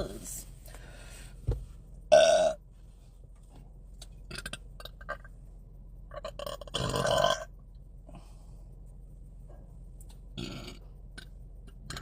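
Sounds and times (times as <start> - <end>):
woman belching: 2.1 - 2.6, 6.3 - 7.5.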